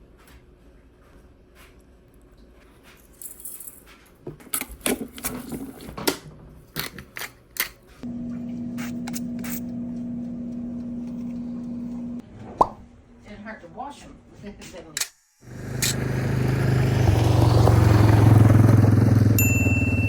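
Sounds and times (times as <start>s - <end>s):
kitchen appliance motor humming: 8.0s - 12.2s, 15.4s - 20.0s.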